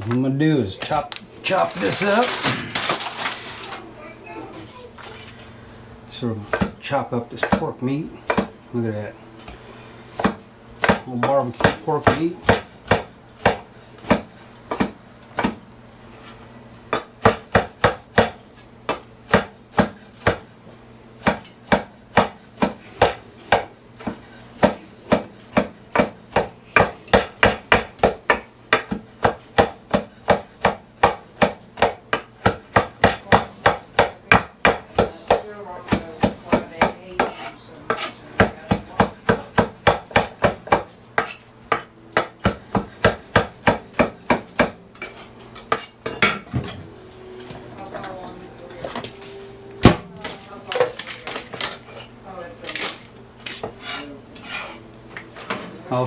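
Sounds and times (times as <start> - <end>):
knife chopping on cutting board: 6.5 - 6.8, 7.4 - 8.6, 9.5 - 15.6, 16.9 - 20.5, 21.2 - 46.7, 52.8 - 54.8.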